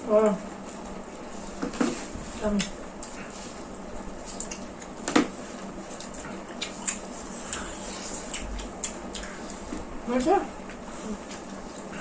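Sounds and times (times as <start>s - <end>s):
wet chewing and lip smacks: 4.2s - 5.1s, 5.9s - 9.6s.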